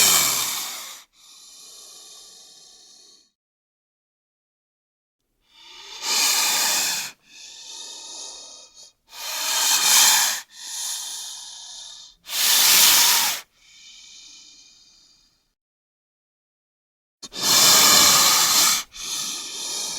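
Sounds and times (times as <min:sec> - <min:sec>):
snake hissing: 0:00.0 - 0:03.3, 0:05.5 - 0:15.2, 0:17.2 - 0:19.9.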